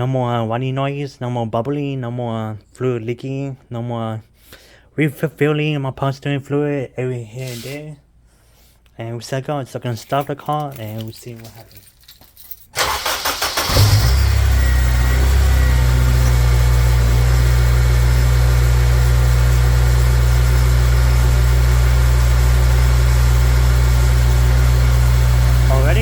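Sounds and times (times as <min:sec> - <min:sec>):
car engine cranking and idling: 0:12.8 - 0:26.0.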